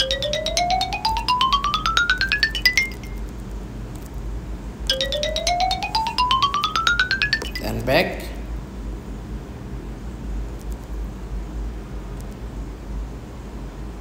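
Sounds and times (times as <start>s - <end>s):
rising chiming ringtone: 0.0s - 3.2s, 4.9s - 7.9s.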